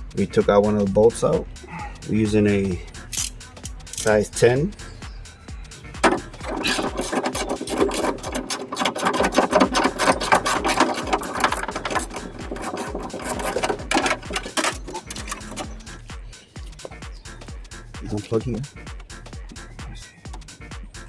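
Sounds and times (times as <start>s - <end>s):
ratchet wrench clicking: 3.1s - 4.2s, 6.0s - 16.0s.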